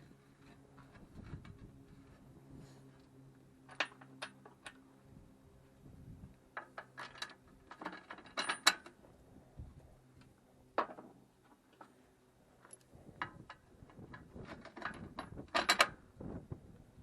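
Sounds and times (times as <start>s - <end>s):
metal tools clinking on steel: 7.0s - 8.9s.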